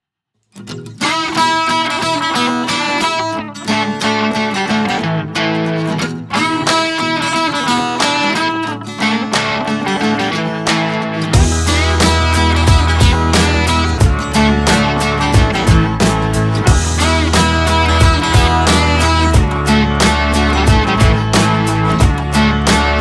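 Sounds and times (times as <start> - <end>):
strummed guitar music: 0.5 - 23.0.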